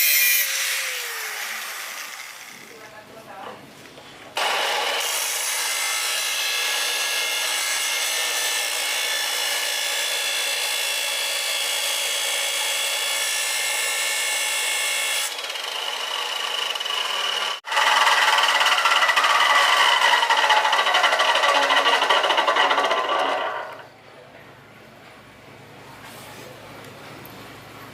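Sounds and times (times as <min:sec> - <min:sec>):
drill bit grinding: 0:15.2 - 0:23.9
grinder high whine: 0:15.3 - 0:23.9.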